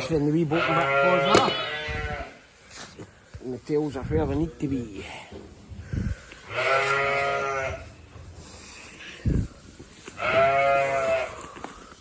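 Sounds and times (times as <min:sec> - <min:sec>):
sheep bleating: 0:00.0 - 0:02.5, 0:06.4 - 0:08.0, 0:10.0 - 0:11.6.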